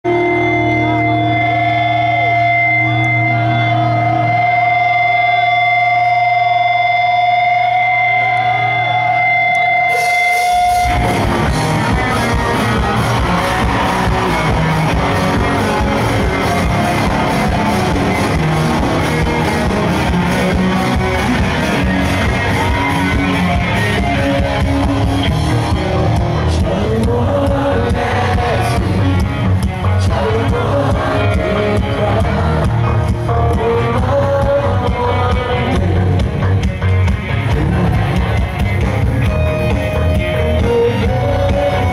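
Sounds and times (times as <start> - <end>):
rock band playing: 0.0 - 41.9
held high note: 0.1 - 24.0.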